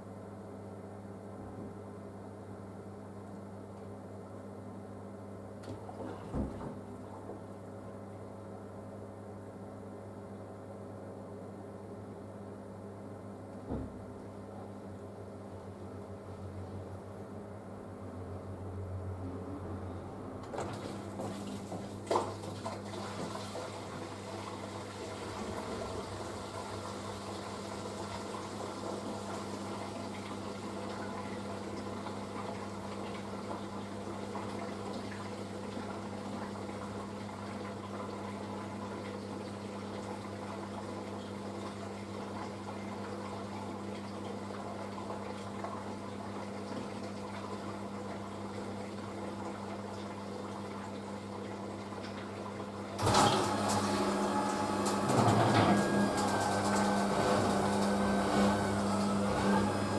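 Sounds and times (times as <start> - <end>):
washing machine low hum: 0.0 - 59.9
water rushing into drum: 20.5 - 30.7.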